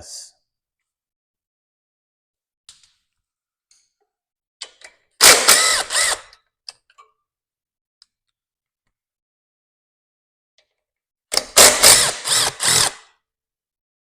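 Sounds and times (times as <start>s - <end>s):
cordless drill motor whine: 5.2s - 6.3s, 11.8s - 13.0s.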